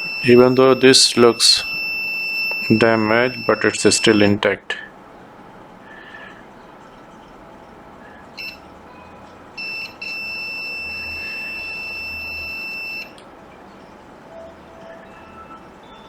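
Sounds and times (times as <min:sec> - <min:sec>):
multimeter continuity beeps: 0:00.0 - 0:04.4, 0:08.3 - 0:13.3, 0:14.3 - 0:16.0.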